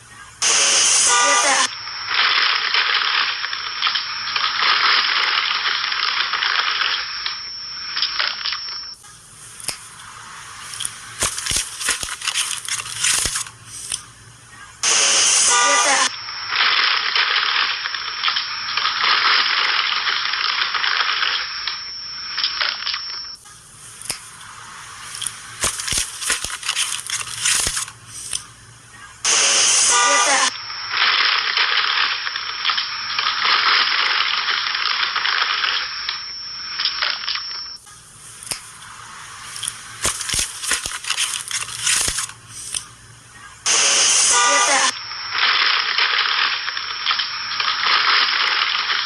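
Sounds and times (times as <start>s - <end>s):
small clicks: 2.7s - 14.1s, 22.4s - 28.5s, 31.0s - 42.9s
dense crackling and crunching: 9.5s - 14.0s, 23.8s - 28.4s, 29.9s - 37.3s, 38.1s - 42.8s, 45.0s - 49.0s.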